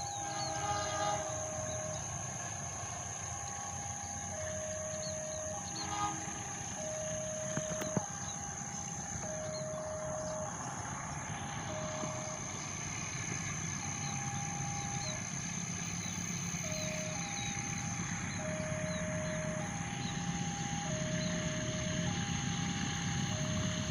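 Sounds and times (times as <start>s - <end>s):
low vehicle rumble: 0.0s - 23.9s
two-pitch alternating tone: 0.0s - 23.9s.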